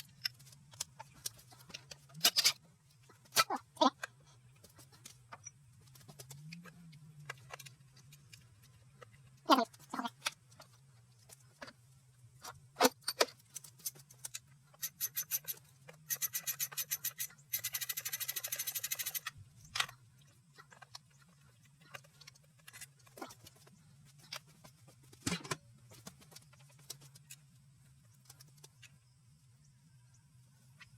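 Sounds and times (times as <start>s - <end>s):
metal tool clicks: 13.0s - 19.9s
ratchet wrench clicking: 14.8s - 19.3s.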